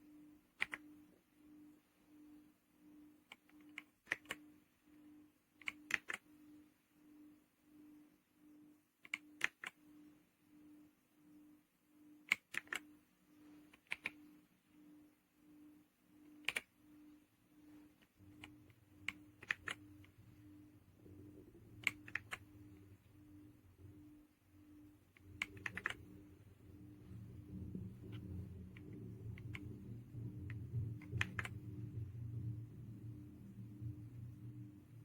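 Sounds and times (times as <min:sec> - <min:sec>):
faint low hum: 0:00.0 - 0:35.0
mechanical keyboard key clicks: 0:00.6 - 0:00.8, 0:03.3 - 0:04.4, 0:05.6 - 0:06.2, 0:09.0 - 0:09.8, 0:12.3 - 0:12.9, 0:13.7 - 0:14.2, 0:16.4 - 0:16.7, 0:21.8 - 0:22.5, 0:25.2 - 0:26.1, 0:30.5 - 0:31.6.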